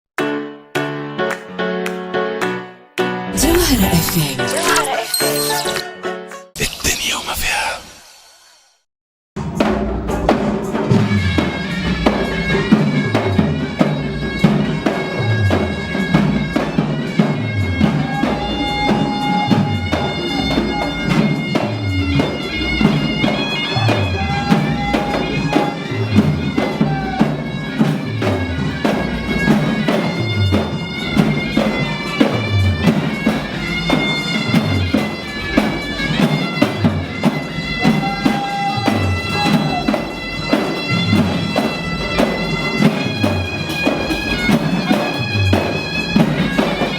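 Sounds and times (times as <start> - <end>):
bass drum beat: 9.4 - 29.4
reedy bagpipe-like wind instrument: 11.2 - 46.9.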